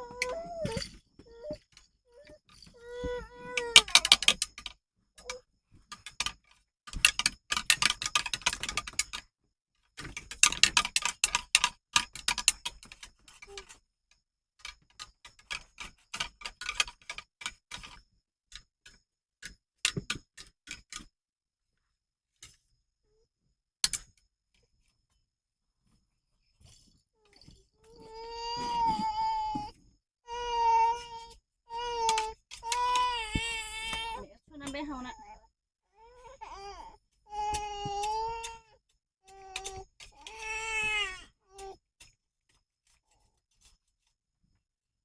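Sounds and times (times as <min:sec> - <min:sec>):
rapid irregular clicking: 0:03.5 - 0:04.7.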